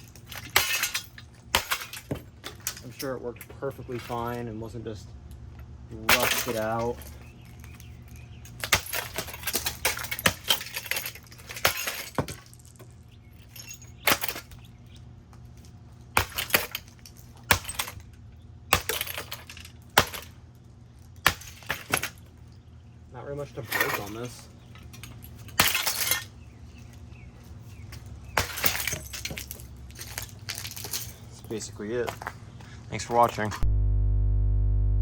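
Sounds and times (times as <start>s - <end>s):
ceiling fan being smashed: 0.0s - 2.9s, 6.0s - 7.8s, 8.5s - 12.7s, 13.6s - 14.6s, 16.1s - 20.4s, 21.2s - 22.3s, 24.9s - 26.3s, 28.3s - 31.1s
breaking parts rattling: 0.0s - 4.5s, 6.0s - 22.6s, 23.4s - 27.0s, 27.8s - 32.4s.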